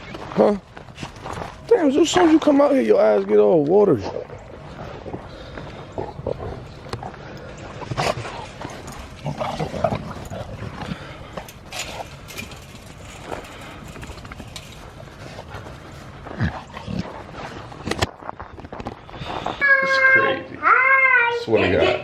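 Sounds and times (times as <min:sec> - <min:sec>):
clicks and rustling: 0:06.8 - 0:16.3.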